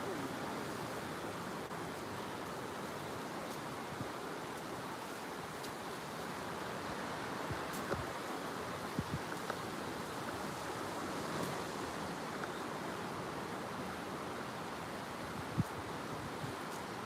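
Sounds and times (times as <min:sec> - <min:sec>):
strong rushing wind: 0:06.7 - 0:12.2.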